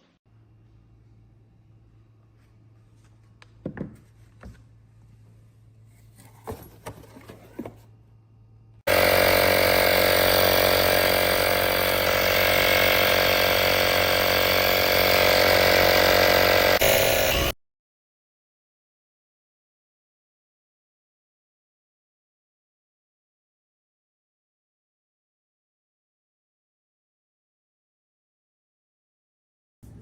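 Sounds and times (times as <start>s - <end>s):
air compressor running: 8.9s - 17.6s.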